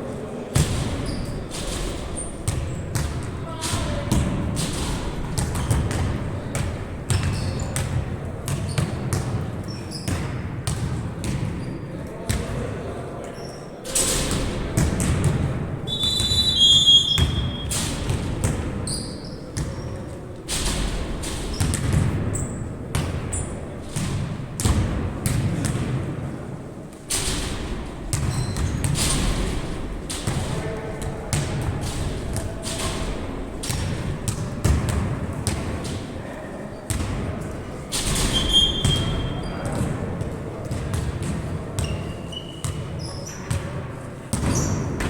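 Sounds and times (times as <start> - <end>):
voices echoing in gym: 0.0 - 45.0
basketball bouncing: 0.6 - 9.4, 10.1 - 11.7, 14.3 - 16.3, 17.1 - 19.9, 20.6 - 26.2, 27.1 - 36.0, 36.9 - 42.9
referee's whistle: 15.9 - 17.7, 38.4 - 39.4.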